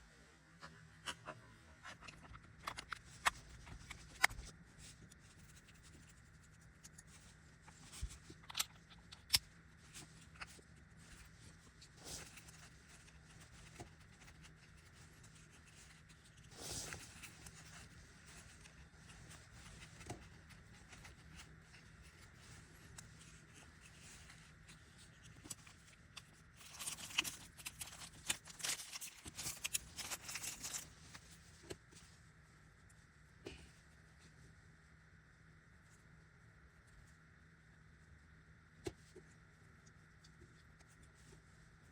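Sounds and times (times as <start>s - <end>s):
light clicks and scrapes: 0.6s - 32.2s.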